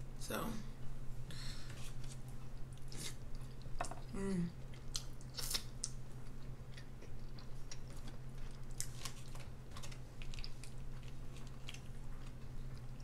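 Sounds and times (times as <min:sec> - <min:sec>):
steady low hum: 0:00.0 - 0:13.0
chewing: 0:02.4 - 0:03.8, 0:04.7 - 0:13.0.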